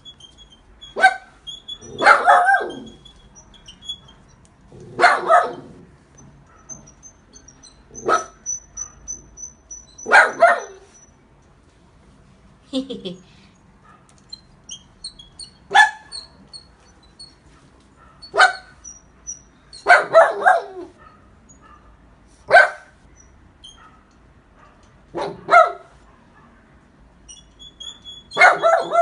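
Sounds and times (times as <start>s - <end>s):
dog barking: 2.0s - 2.9s, 4.9s - 5.7s, 8.0s - 8.4s, 10.1s - 10.9s, 18.0s - 18.8s, 19.8s - 23.0s, 23.8s - 26.6s, 28.4s - 29.0s.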